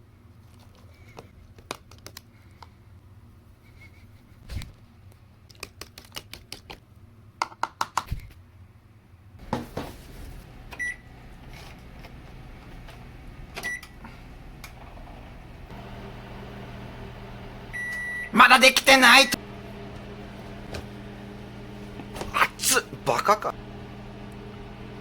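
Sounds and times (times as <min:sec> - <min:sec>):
microwave oven humming: 0:09.4 - 0:25.0.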